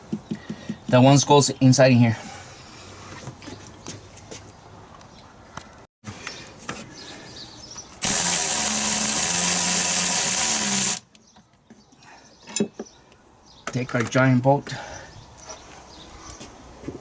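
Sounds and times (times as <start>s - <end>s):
power drill spinning: 8.0s - 11.0s.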